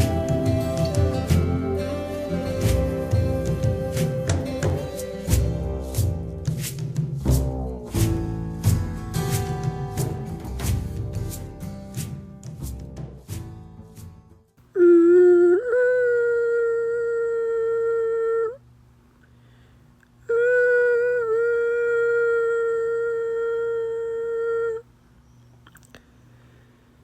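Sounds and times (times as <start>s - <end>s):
person humming notes: 0.0s - 5.8s, 14.7s - 18.6s, 20.2s - 24.9s.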